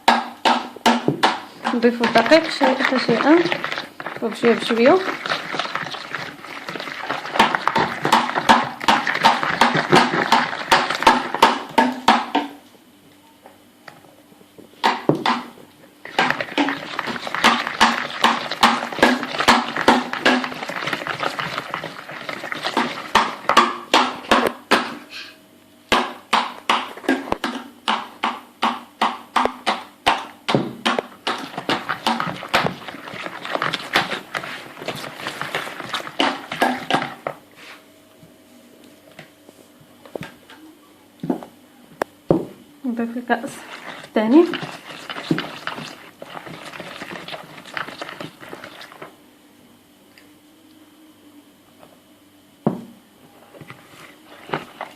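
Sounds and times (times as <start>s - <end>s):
batter mixed by hand in bowl: 0.1s - 12.6s, 14.9s - 24.7s, 29.4s - 37.8s, 42.9s - 49.2s, 53.4s - 54.9s.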